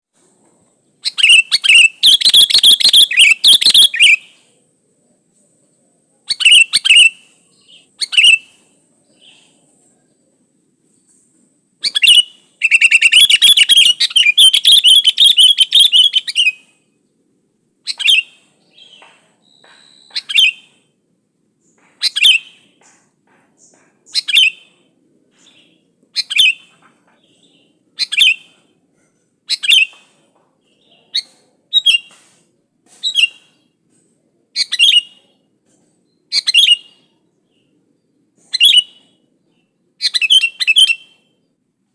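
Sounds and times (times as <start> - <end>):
bulbul chattering song: 0.9 - 4.6, 6.2 - 10.4, 11.1 - 17.1, 17.8 - 20.9, 21.6 - 28.8, 29.4 - 32.3, 34.6 - 35.4, 36.2 - 37.8, 38.4 - 39.3, 40.0 - 41.5.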